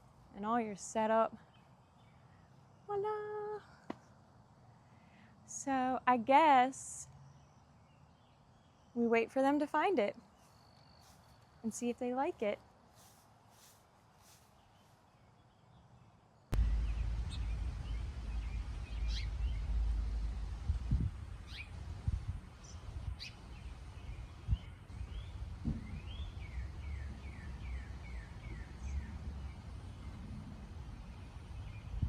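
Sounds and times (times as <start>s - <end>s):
birds chirping: 14.5s - 32.0s
low rumble: 16.6s - 32.0s.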